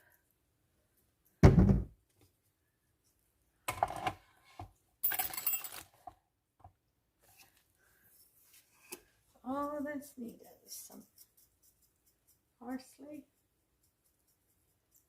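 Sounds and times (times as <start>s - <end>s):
heavy thump: 1.4s - 1.9s.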